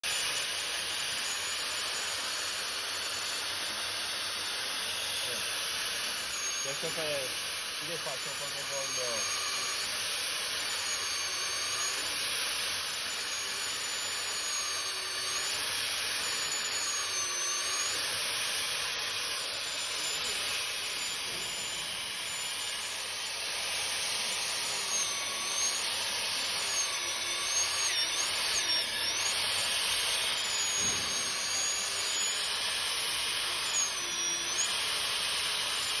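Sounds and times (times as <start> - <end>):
core drill whining: 0.0 - 36.0.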